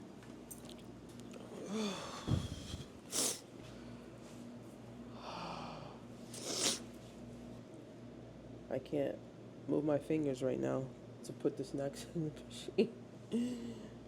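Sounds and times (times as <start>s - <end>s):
faint steady hum: 0.0s - 14.0s
person sniffing and exhaling sharply: 2.3s - 3.4s, 6.3s - 6.9s.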